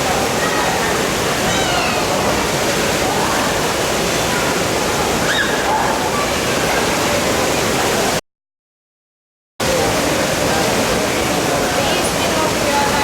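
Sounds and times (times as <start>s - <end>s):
faint voices: 0.0s - 8.2s.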